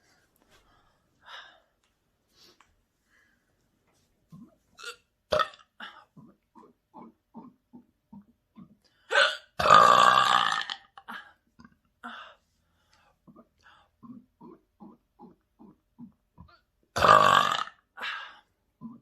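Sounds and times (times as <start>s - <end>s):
person gulping air: 4.2s - 10.7s, 13.2s - 17.6s
loud burp: 4.8s - 7.6s, 9.1s - 11.0s, 13.3s - 17.9s.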